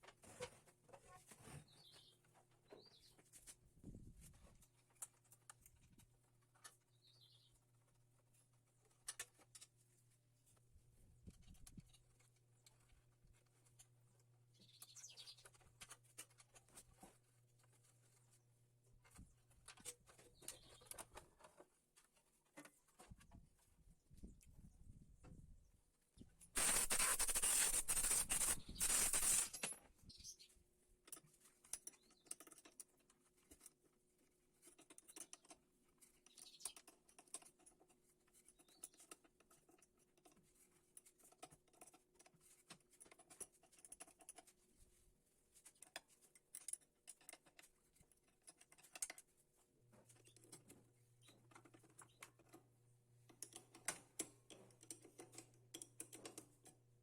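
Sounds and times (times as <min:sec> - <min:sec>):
loud hiss: 0:26.6 - 0:29.6
metal parts and tools clicking: 0:26.6 - 0:29.8, 0:45.8 - 0:49.2.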